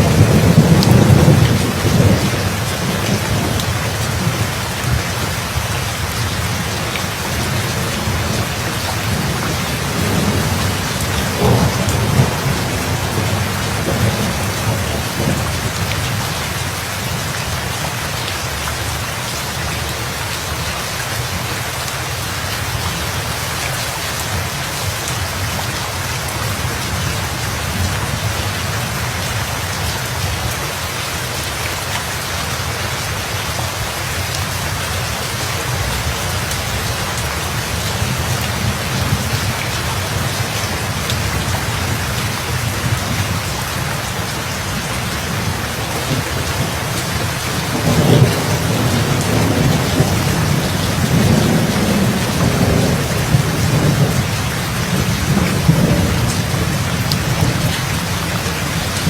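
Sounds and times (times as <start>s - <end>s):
thunder rumbling: 0.0s - 17.2s, 35.5s - 59.0s
heavy rain: 0.0s - 59.0s.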